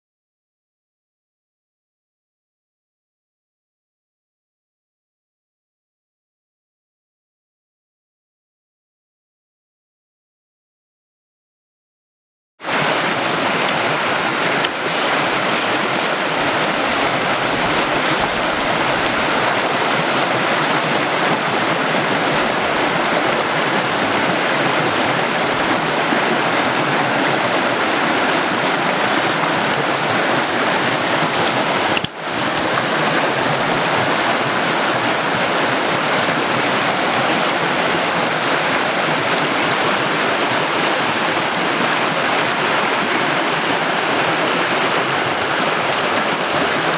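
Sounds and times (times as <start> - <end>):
river water rushing: 12.6 - 46.9.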